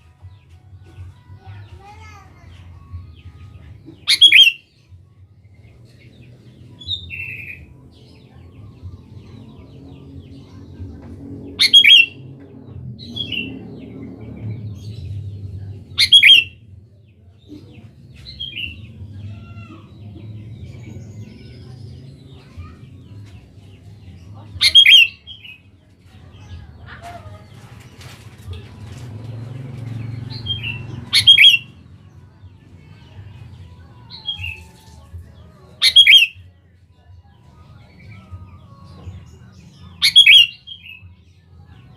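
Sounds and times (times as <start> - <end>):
bird calling loud phrases: 4.0 - 4.7, 16.0 - 16.5, 24.4 - 25.6, 30.3 - 31.8, 35.8 - 36.4, 39.9 - 40.8
steady low rumble: 5.0 - 34.2.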